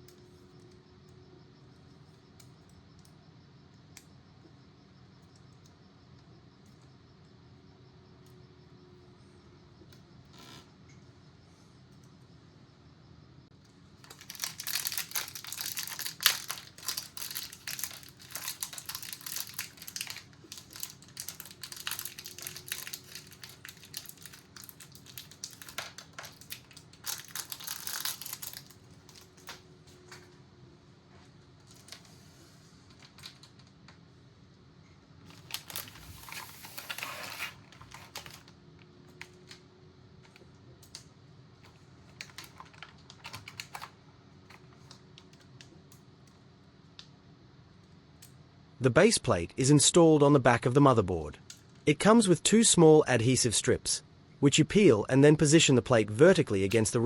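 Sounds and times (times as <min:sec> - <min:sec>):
plastic parts and packaging rustling: 0:13.6 - 0:30.4, 0:31.2 - 0:33.9, 0:35.2 - 0:41.0, 0:41.6 - 0:46.4.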